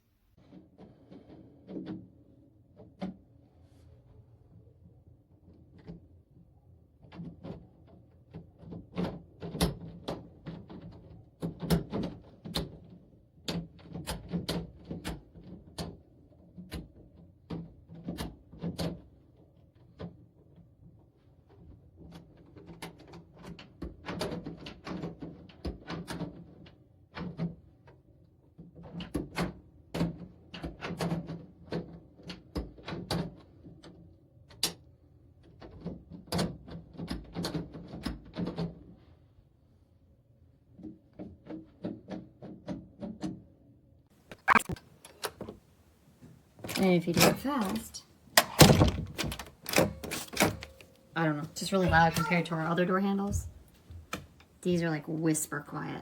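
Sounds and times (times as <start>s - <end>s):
door lever latch clicking: 48.4s - 51.0s.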